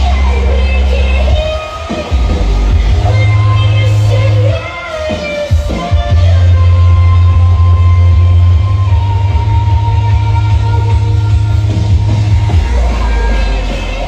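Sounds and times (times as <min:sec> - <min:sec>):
dubstep music with heavy sub-bass: 0:12.2 - 0:14.0.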